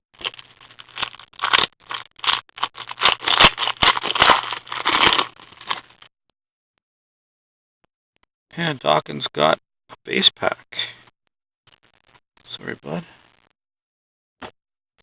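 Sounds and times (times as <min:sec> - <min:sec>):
cards crinkling and scraping: 0:00.2 - 0:06.1.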